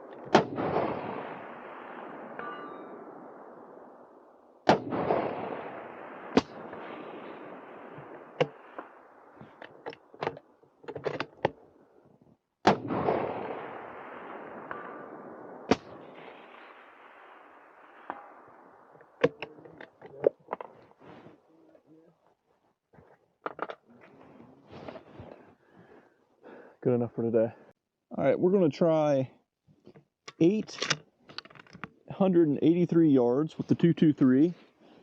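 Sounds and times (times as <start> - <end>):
rolling echo: 0.0 - 10.4, 12.6 - 21.1
suppressed rifle shots: 0.2 - 10.5, 12.6 - 19.8
rifle bolt knocks and clicks: 9.6 - 11.6, 29.9 - 31.9.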